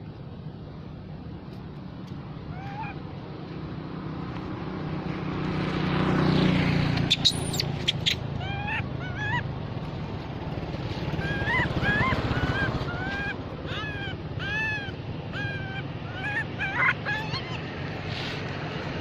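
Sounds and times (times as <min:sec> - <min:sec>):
low engine-like drone: 0:00.0 - 0:19.0
baby monkey squealing cries: 0:02.5 - 0:03.0, 0:07.1 - 0:09.5, 0:11.2 - 0:18.4
sharp high squeaks: 0:07.1 - 0:08.8.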